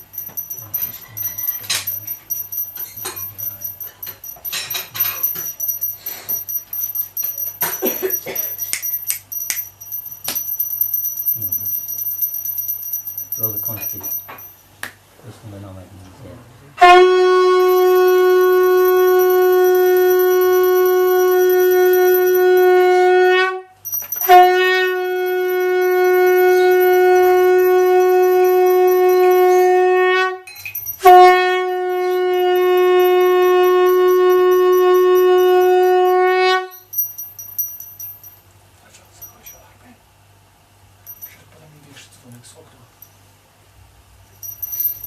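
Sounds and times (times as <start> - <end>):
conch shell blasts: 16.8 - 37.0.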